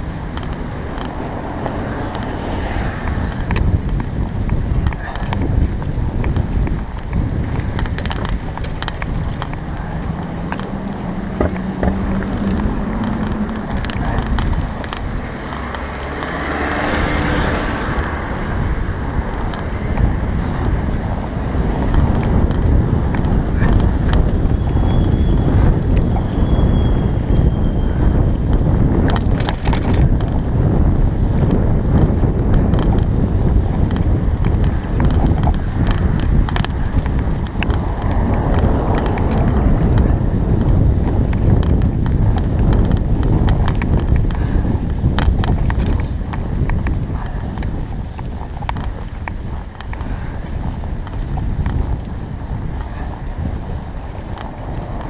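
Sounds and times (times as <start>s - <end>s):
wind rumble on microphone: 0.0s - 55.0s
small clicks and rattles: 0.2s - 2.4s, 3.1s - 16.4s, 29.0s - 31.6s, 32.2s - 55.0s.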